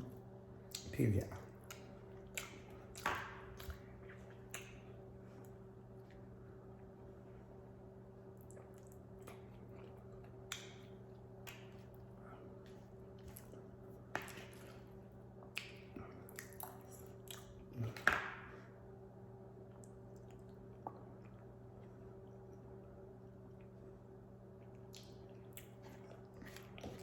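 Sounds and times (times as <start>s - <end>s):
person chewing: 0.0s - 6.2s, 8.3s - 18.0s, 24.6s - 27.0s
steady low hum: 0.0s - 27.0s.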